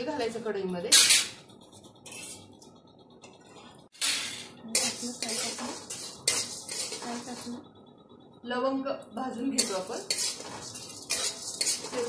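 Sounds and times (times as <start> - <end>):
metal utensil scraping metal pan: 2.0 - 2.5, 4.0 - 7.6, 9.4 - 12.0.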